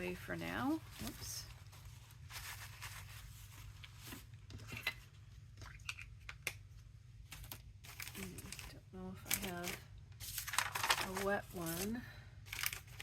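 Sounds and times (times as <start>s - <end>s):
paper rustling: 0.7s - 4.9s, 7.2s - 8.7s, 9.3s - 13.0s.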